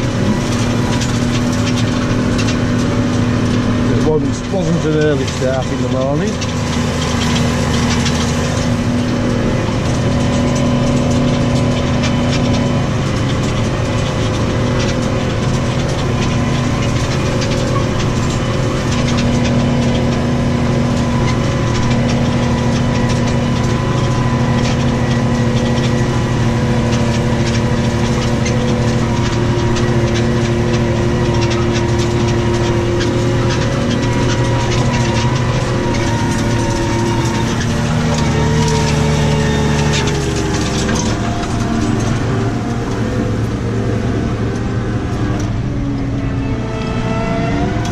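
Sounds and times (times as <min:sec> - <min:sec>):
tractor engine droning: 0:00.0 - 0:47.9.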